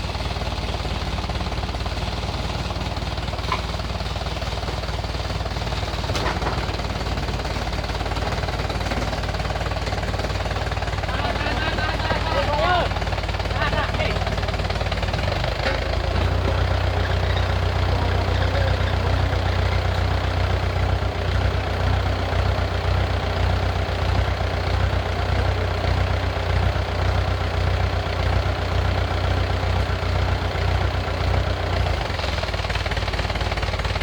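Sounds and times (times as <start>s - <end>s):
heavy engine running steadily: 0.0s - 34.0s.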